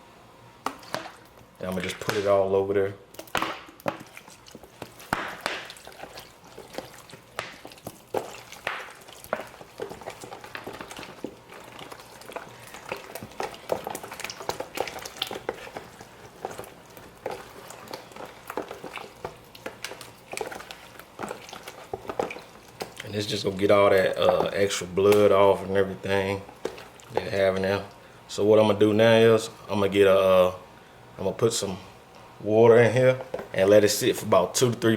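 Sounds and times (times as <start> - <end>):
wet squishing of raw meat: 3.1 - 28.0.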